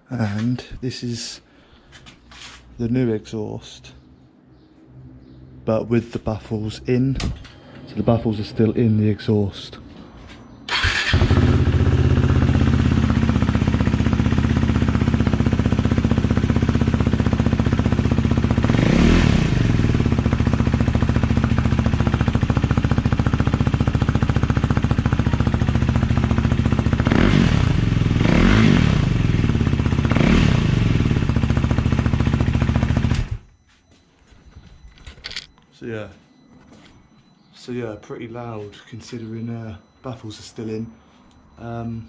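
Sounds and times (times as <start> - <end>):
motorcycle engine idling and revving: 10.4 - 33.6.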